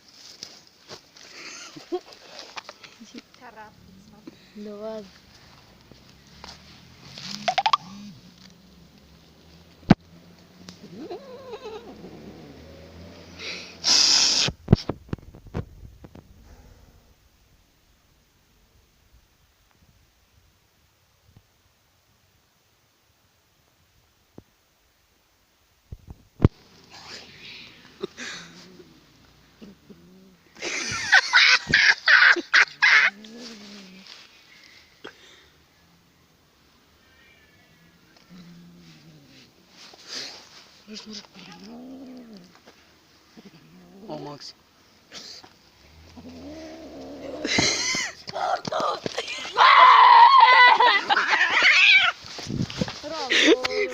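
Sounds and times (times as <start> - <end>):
cat making wavering calls: 7.2 - 8.2, 10.8 - 12.3
cat growling: 10.8 - 13.4, 28.3 - 30.5, 37.2 - 39.6, 41.4 - 42.6, 45.9 - 47.6
cat hissing: 13.3 - 14.7.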